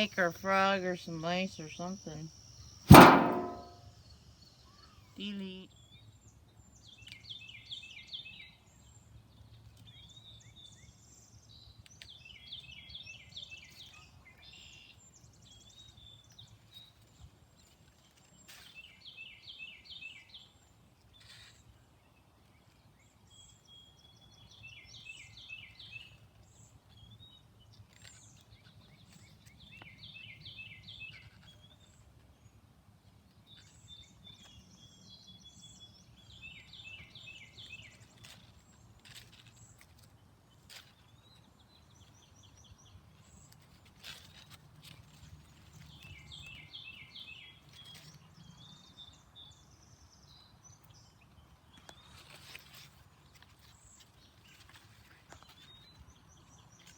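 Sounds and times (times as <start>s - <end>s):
songbird singing: 0.0s - 3.7s, 28.9s - 31.9s, 33.5s - 38.4s, 45.6s - 52.7s.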